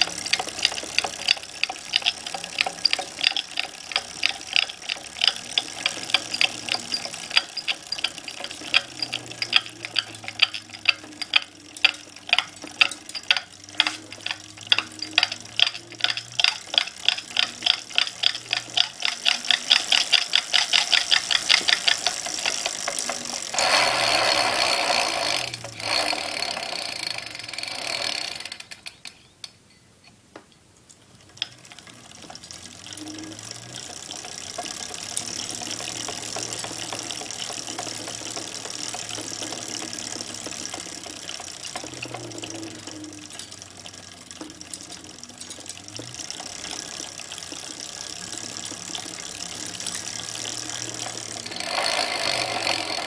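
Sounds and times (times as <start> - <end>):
bike drivetrain rattling and clicking: 0.0 - 29.4, 30.8 - 53.0.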